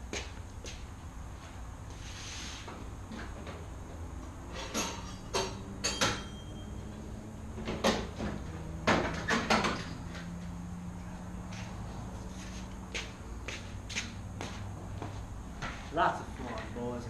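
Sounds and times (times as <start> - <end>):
knocks and clatters of tools: 4.5 - 6.4, 7.6 - 10.4.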